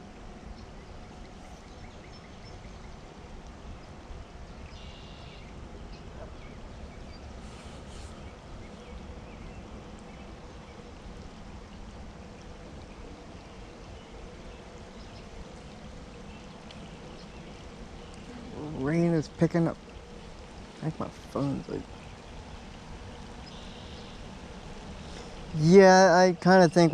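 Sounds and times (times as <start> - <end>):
steady rain falling: 0.0 - 26.9.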